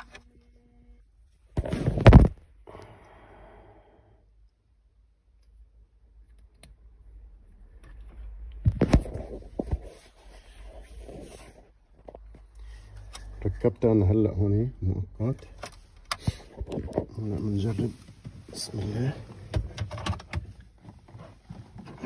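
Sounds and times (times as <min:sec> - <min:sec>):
sharp clicks and handling noise: 0:00.0 - 0:00.5, 0:15.3 - 0:18.3, 0:19.4 - 0:22.0
soft rustle: 0:17.1 - 0:19.5.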